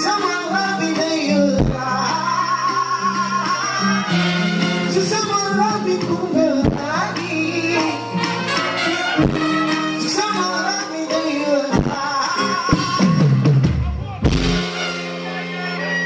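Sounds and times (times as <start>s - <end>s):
person singing: 0.0s - 13.6s
bass line: 11.8s - 16.0s.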